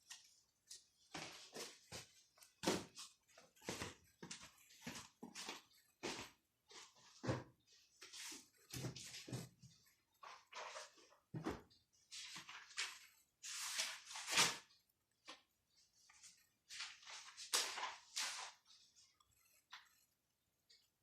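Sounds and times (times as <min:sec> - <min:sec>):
pen scraping on writing surface: 0:19.2 - 0:20.1.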